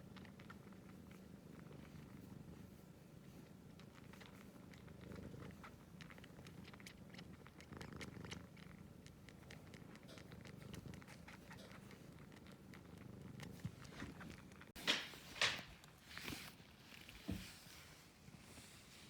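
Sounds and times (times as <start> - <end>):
cat purring: 0.0 - 14.8.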